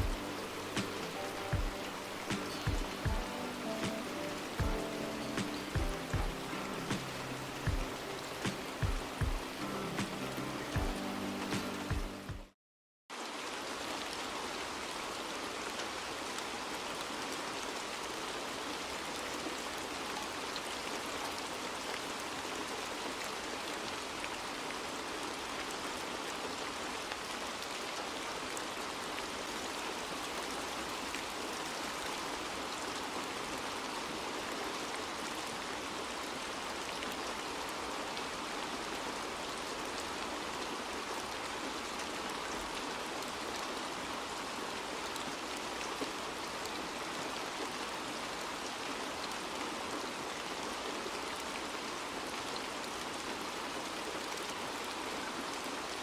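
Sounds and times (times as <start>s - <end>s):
steady rainfall: 0.0s - 56.0s.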